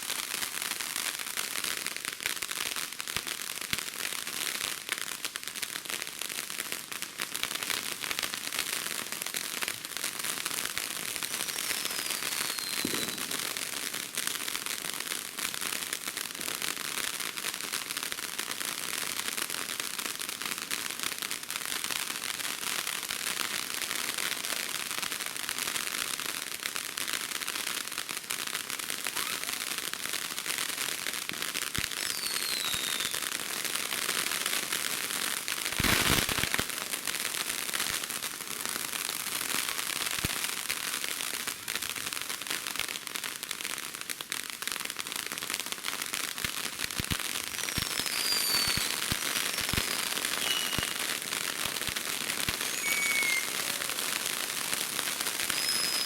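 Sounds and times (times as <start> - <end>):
fireworks crackling: 0.0 - 56.0
firework whistle falling in pitch: 11.3 - 13.5, 29.0 - 29.8, 32.0 - 33.2, 47.5 - 51.2, 52.4 - 56.0
loud firework burst: 11.3 - 13.9, 35.7 - 37.1, 47.4 - 56.0.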